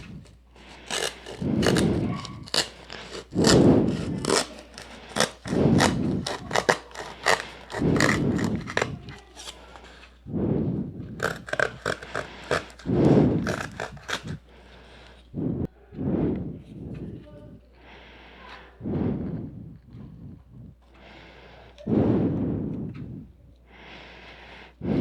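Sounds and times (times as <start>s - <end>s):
cardboard cutting strokes: 0.0s - 10.2s, 11.1s - 15.1s
small clicks and scrapes: 0.0s - 10.2s, 11.2s - 14.4s.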